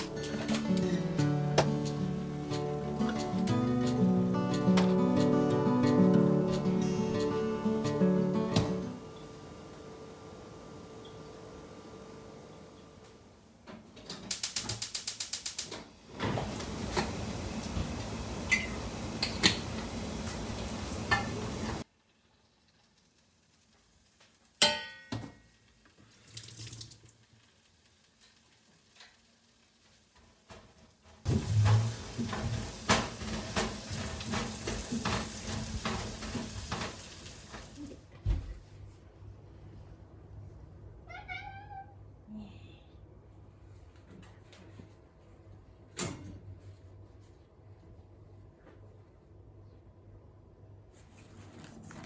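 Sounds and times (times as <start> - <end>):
food sizzling in a frying pan: 16.5 - 24.6, 25.5 - 38.0.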